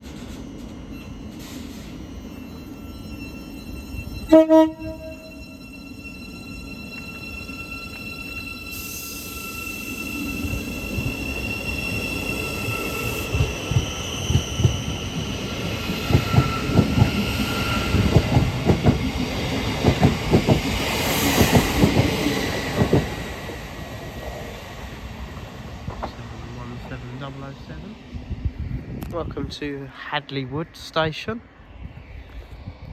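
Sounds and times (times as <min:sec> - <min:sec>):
high-pitched train tones: 0:00.1 - 0:28.5
train wheels clicking over rail joints: 0:10.9 - 0:23.4.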